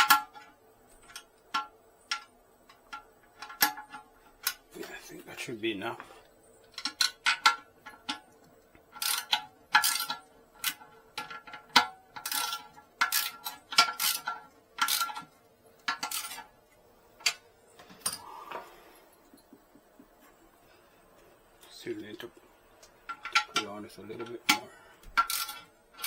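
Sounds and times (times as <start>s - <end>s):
hand tools clinking on metal: 23.1s - 26.0s.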